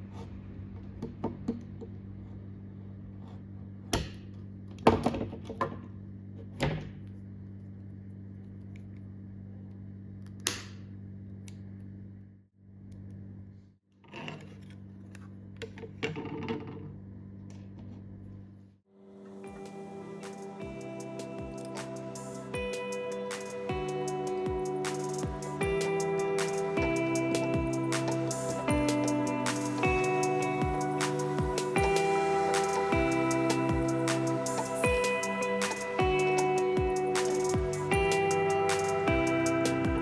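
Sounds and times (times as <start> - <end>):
low electrical hum: 0.0 - 22.8.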